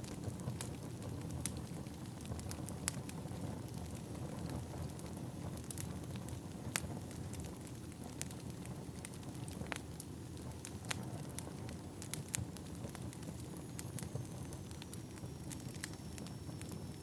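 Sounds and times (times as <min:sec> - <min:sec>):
fire rumbling: 0:00.0 - 0:17.0
firewood popping: 0:08.2 - 0:16.8.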